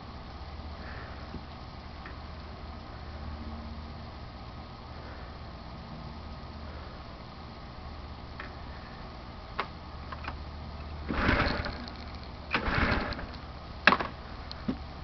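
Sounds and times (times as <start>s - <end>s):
engine cranking on pull-starter: 11.0s - 14.1s.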